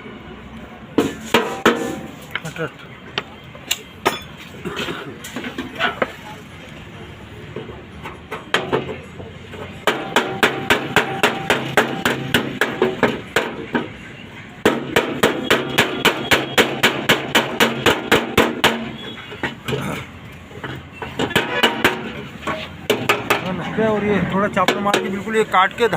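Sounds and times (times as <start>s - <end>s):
hammer beating sheet metal: 1.0s - 2.2s, 9.8s - 13.9s, 14.6s - 19.0s, 21.2s - 23.5s, 24.6s - 25.2s.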